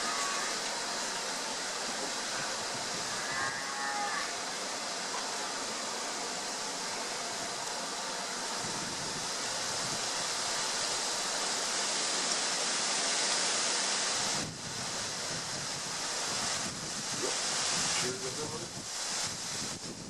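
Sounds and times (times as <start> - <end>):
strong wind rushing: 14.2 - 20.0.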